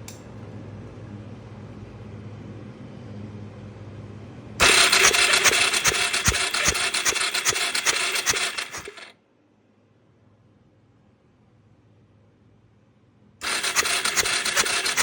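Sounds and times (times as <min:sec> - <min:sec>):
electric starter cranking engine: 0:04.6 - 0:09.1, 0:13.4 - 0:15.0.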